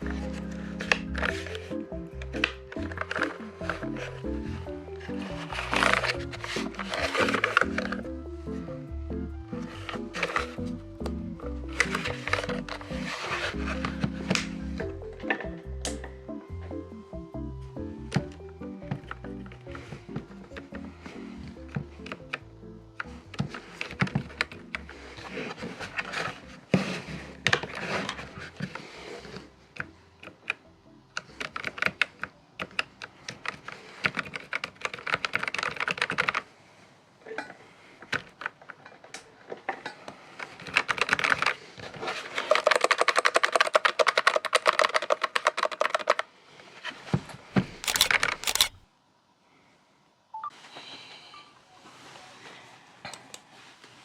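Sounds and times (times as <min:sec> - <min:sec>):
mechanical keyboard typing: 0:31.2 - 0:36.4, 0:47.7 - 0:48.8.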